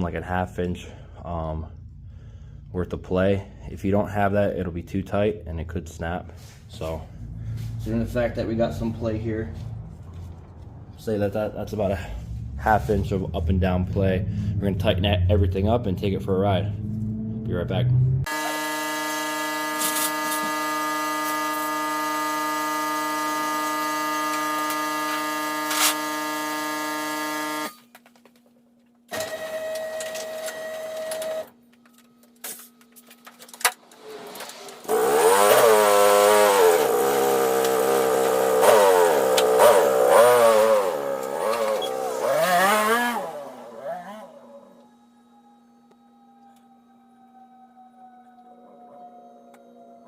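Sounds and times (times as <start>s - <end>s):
atv engine revving: 34.8s - 44.6s
atv engine droning: 34.8s - 46.0s.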